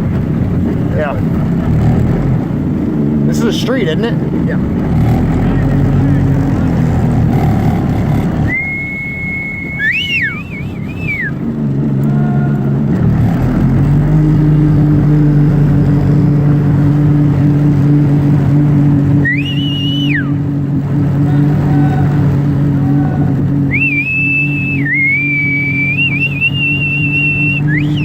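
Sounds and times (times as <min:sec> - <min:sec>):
vehicle engine hum: 0:00.0 - 0:28.0
high whistle-like tones: 0:08.5 - 0:11.4, 0:19.2 - 0:20.4, 0:23.7 - 0:28.0.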